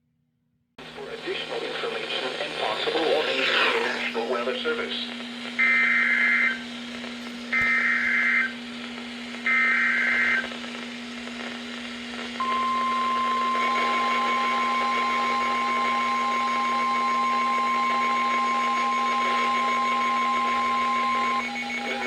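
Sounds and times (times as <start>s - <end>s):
steady warning alarm tone: 7.5s - 8.5s, 12.4s - 22.0s
buzzy data screeches: 7.5s - 8.6s, 9.4s - 10.5s, 12.4s - 22.0s.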